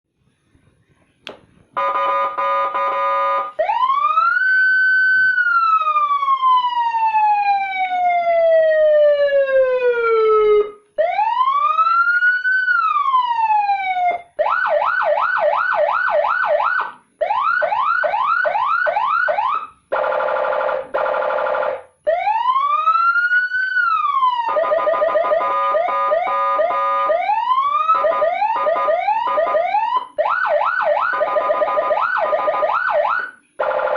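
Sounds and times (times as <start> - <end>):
harsh buzzing horn: 1.8 - 3.5
electronic siren horn blast: 1.8 - 3.9, 24.5 - 30.0
siren wailing: 1.8 - 33.9
siren yelping: 1.8 - 33.9.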